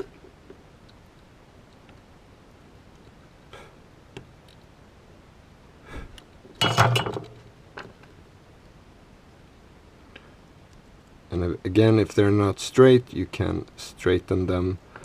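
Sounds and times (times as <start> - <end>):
object clattering on workbench: 6.6 - 7.4.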